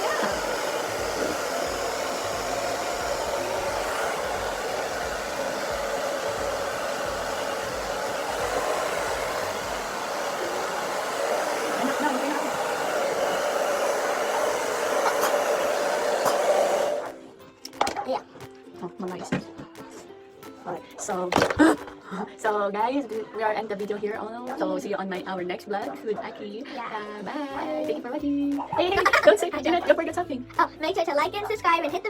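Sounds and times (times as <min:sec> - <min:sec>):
hair dryer whirring: 0:00.0 - 0:17.2.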